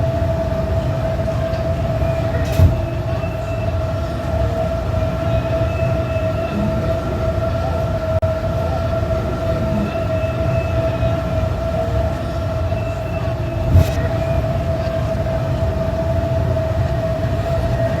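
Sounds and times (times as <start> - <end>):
steady mechanical hum: 0.0 - 18.0
brief thump: 2.4 - 2.9.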